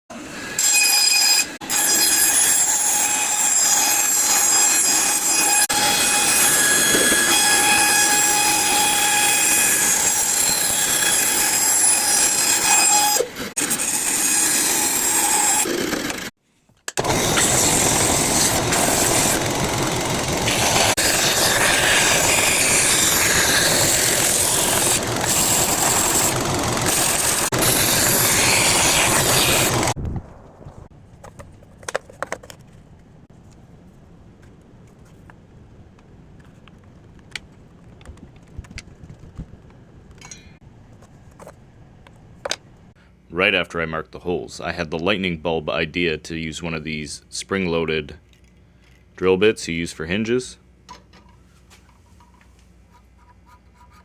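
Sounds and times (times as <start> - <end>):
electric power tool motor whining: 17.0 - 30.0.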